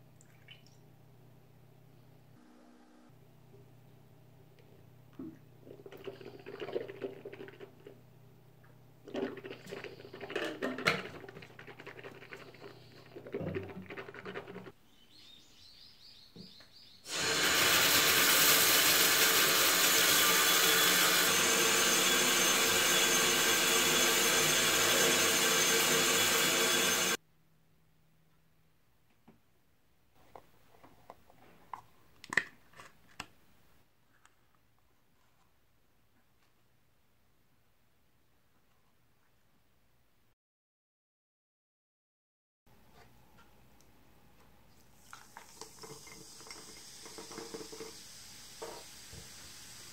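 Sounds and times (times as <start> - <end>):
tap water running: 17.1 - 27.2, 44.9 - 49.9.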